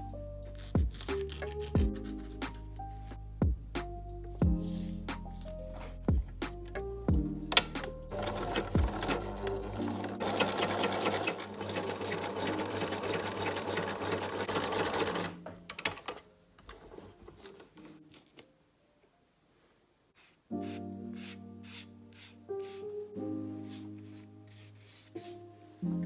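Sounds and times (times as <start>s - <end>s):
sewing machine stitching: 7.6s - 16.2s.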